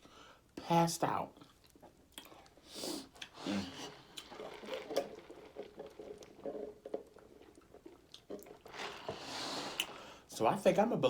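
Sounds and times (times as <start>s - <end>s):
person chewing food: 1.4s - 10.0s.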